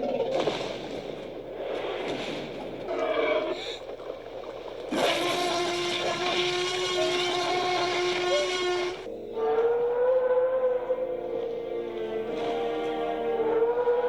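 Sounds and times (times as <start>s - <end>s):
dinosaur creature calls: 5.0s - 14.0s.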